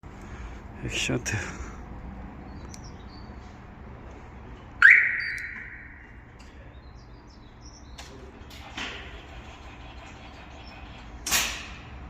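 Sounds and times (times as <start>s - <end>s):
car alarm electronic chirp: 4.8s - 6.2s.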